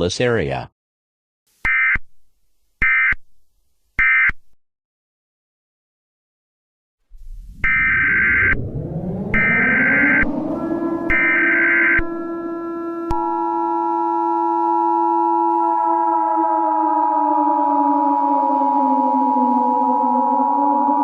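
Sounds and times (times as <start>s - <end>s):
low drone: 7.1s - 21.0s
warbling data tones: 7.2s - 13.6s
two-tone attention signal: 7.6s - 14.1s.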